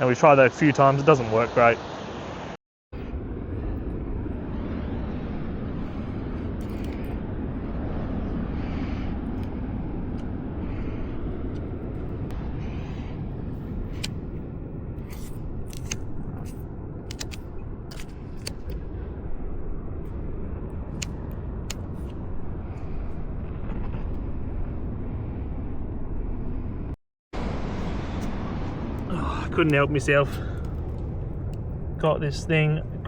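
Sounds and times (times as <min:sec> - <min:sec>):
wind: 0:00.0 - 0:33.0
sharp clicks and ticks: 0:15.2 - 0:18.8, 0:20.9 - 0:22.2.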